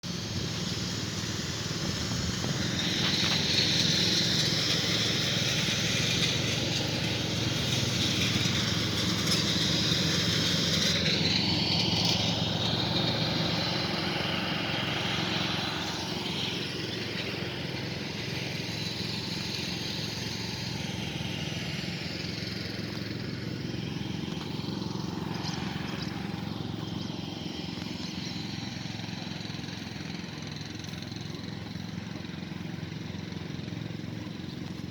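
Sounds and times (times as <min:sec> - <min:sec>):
lawn mower engine running: 0:00.0 - 0:34.9.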